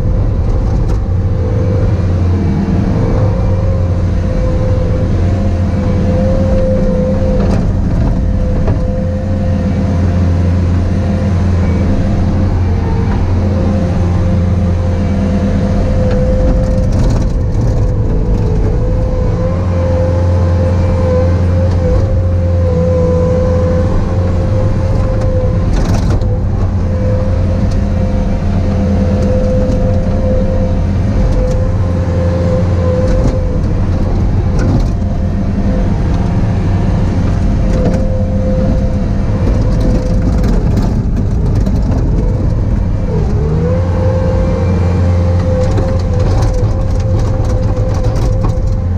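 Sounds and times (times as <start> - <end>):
diesel engine running: 0.0 - 48.9
wavering whine: 0.0 - 48.9.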